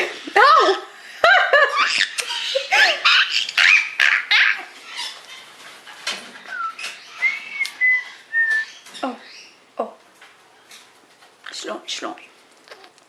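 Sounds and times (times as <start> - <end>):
parrot squawking: 1.8 - 5.6, 6.4 - 9.6.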